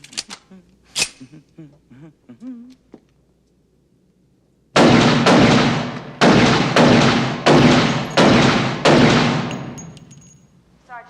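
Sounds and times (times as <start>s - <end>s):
handgun shots echoing indoors: 4.8s - 10.4s.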